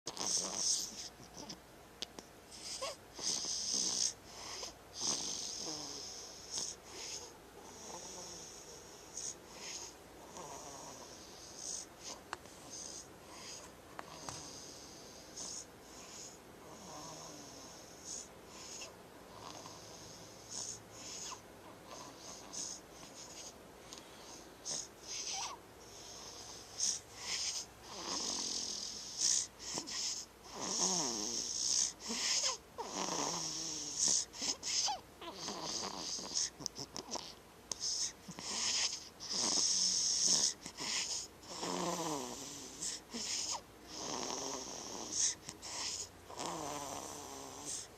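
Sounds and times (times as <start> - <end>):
person snoring with hiss: 0.1 - 1.6, 2.5 - 47.9.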